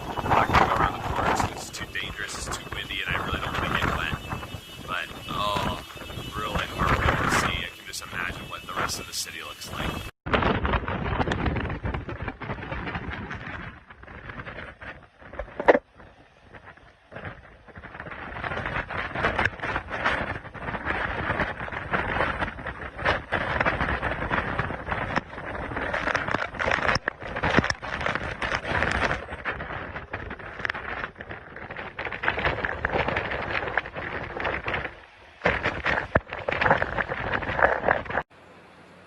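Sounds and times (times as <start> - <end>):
hurricane wind gusting over microphone: 0.0 - 38.3.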